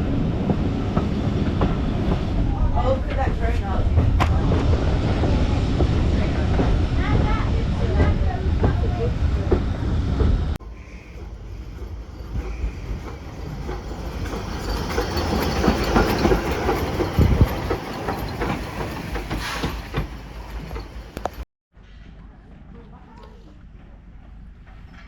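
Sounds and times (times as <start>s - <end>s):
low rumble: 0.0s - 14.8s
train rolling noise: 0.0s - 25.0s
train wheels clicking over rail joints: 0.2s - 21.4s.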